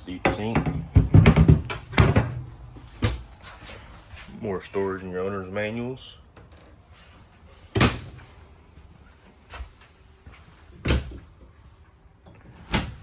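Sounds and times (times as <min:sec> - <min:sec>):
cabinet doors knocking shut: 0:00.3 - 0:03.2.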